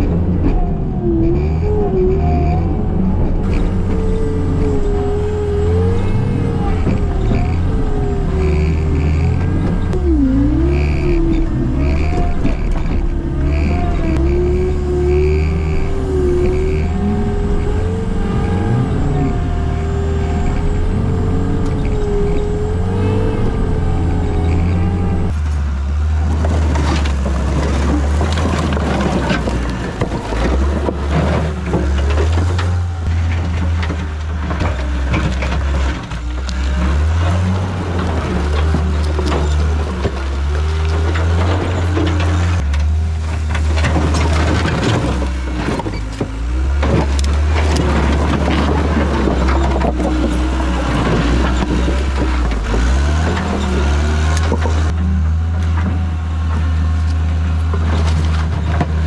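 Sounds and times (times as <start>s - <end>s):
diesel engine working under load: 0.0s - 59.0s
bucket clanking and scraping: 26.3s - 54.9s.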